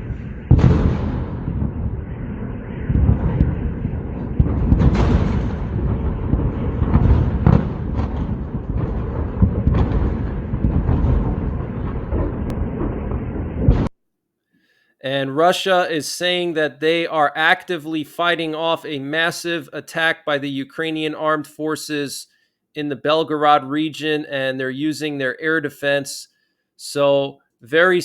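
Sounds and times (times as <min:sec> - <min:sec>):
shell explosions: 0:00.0 - 0:13.9.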